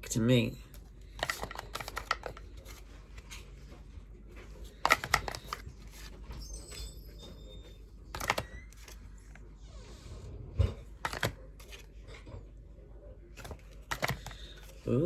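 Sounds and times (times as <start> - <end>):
cards clicking and snapping: 0.7 - 3.4, 4.4 - 6.4, 8.1 - 9.4, 10.9 - 12.2, 13.4 - 14.9.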